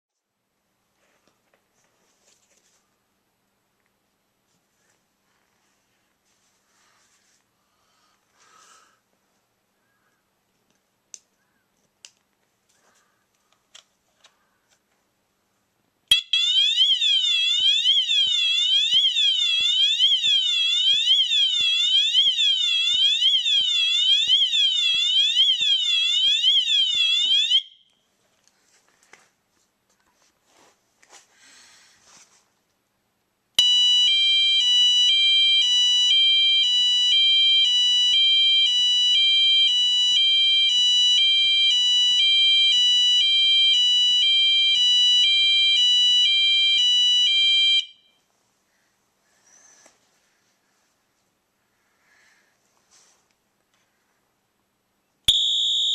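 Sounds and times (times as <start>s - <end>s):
fire alarm horn alternating tone: 16.1s - 28.0s, 33.6s - 48.2s, 55.3s - 55.9s
fire alarm horn sweeping tone: 16.1s - 28.0s, 33.6s - 48.2s, 55.3s - 55.9s.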